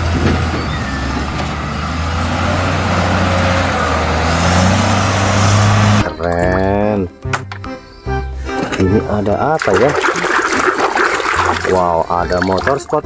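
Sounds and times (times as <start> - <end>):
bulldozer diesel engine running: 0.0 - 6.8.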